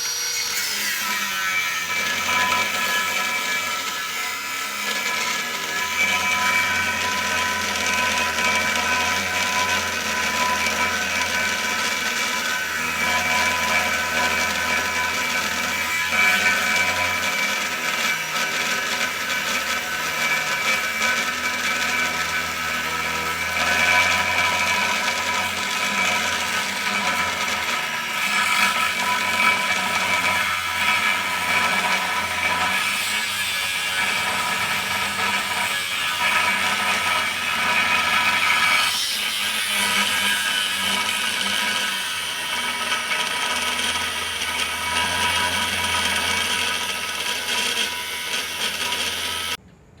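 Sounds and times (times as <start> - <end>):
angle grinder cutting steel: 0.0 - 49.6.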